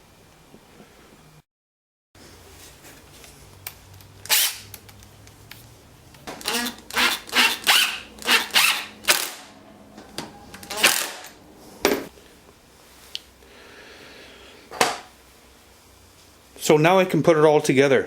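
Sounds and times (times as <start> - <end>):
screws being driven into wood: 4.3 - 4.7, 6.3 - 9.5, 10.6 - 11.4.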